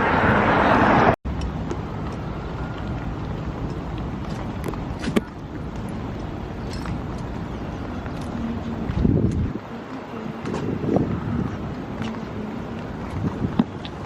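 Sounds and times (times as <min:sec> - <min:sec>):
car road noise: 0:00.0 - 0:14.0.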